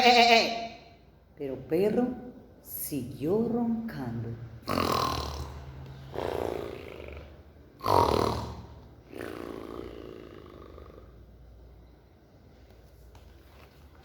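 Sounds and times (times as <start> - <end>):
woman imitating snoring: 4.7 - 11.2.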